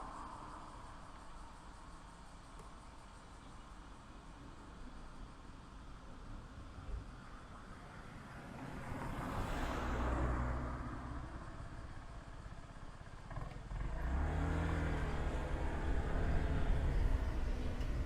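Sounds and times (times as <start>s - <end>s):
vehicle passing by: 8.3s - 12.1s, 13.3s - 18.0s
engine humming steadily: 11.0s - 18.0s.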